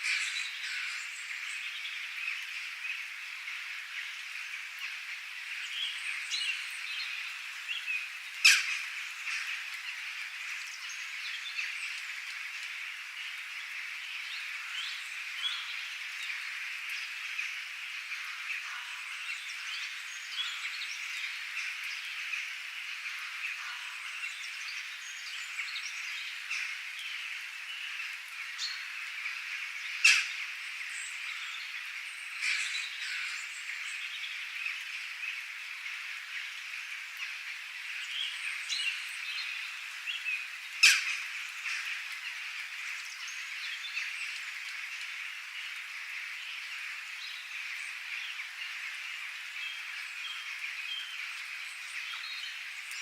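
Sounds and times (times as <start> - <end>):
birds chirping and calling: 27.8 - 34.8.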